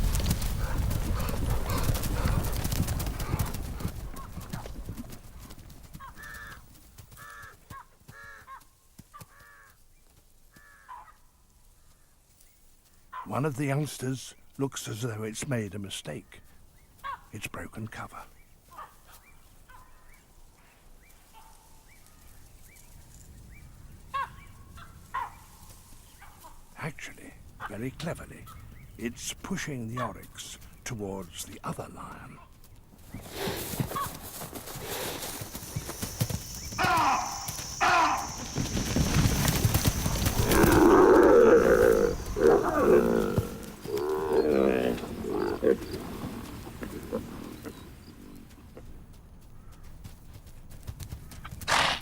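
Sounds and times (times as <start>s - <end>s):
wild birds calling: 0.0s - 5.4s, 31.8s - 48.8s
animals scuffling: 0.0s - 8.4s, 31.8s - 51.8s
lions growling and snarling: 0.3s - 3.9s, 39.9s - 48.5s
short animal calls: 35.0s - 38.7s.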